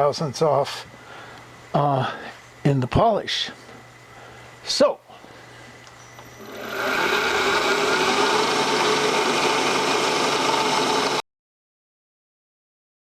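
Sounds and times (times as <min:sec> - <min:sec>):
milling machine cutting metal: 0:06.4 - 0:11.2.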